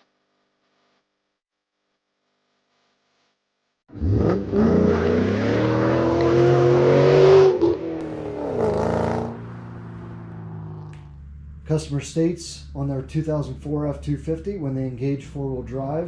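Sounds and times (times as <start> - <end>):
pickup truck engine revving: 3.9 - 16.0.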